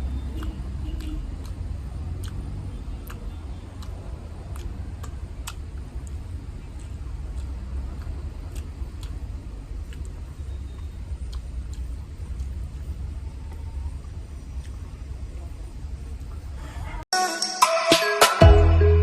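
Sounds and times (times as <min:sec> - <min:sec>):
eating clicks: 0:00.0 - 0:15.1
low background rumble: 0:00.0 - 0:17.1.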